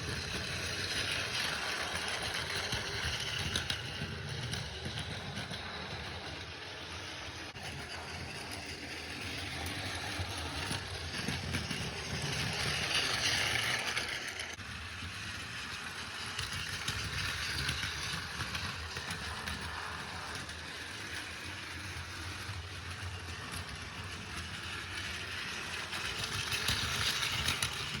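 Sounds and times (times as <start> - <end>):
rattling wheels on track: 0.0 - 28.0
toy train motor whir: 0.0 - 28.0.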